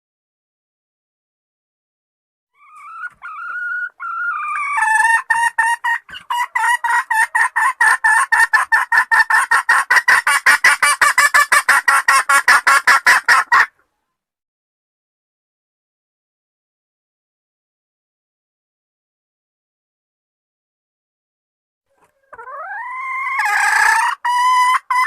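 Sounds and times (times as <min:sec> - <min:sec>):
hen clucking: 0:02.6 - 0:13.8, 0:21.9 - 0:25.0.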